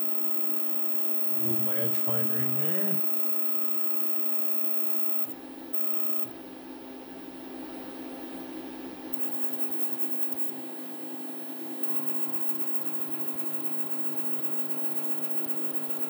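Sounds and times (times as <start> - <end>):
milling machine motors whining: 0.0 - 6.4, 11.8 - 16.0.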